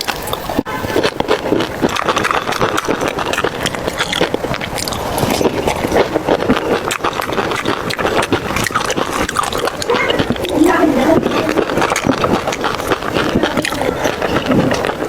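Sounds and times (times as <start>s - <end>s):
wet chewing and smacking: 0.0s - 15.0s.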